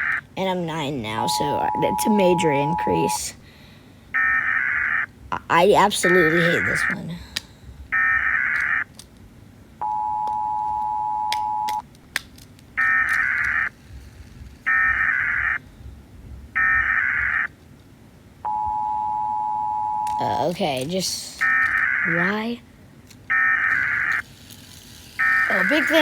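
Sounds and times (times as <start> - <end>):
harsh buzzing data bursts: 0.0 - 3.4, 4.2 - 7.2, 23.3 - 26.0
two-tone alert signal: 0.9 - 3.2, 9.8 - 11.8.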